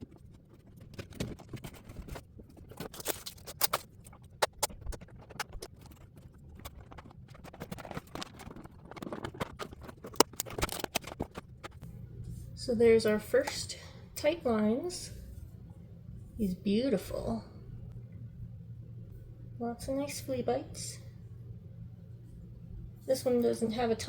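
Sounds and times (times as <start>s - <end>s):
cardboard and plastic packaging rustling: 0.0s - 11.9s.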